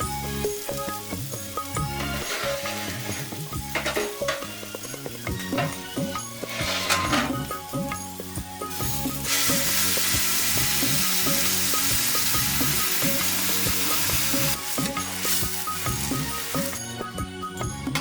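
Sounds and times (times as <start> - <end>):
food sizzling in hot oil: 0.0 - 17.0
stirring in a pan: 1.8 - 4.6.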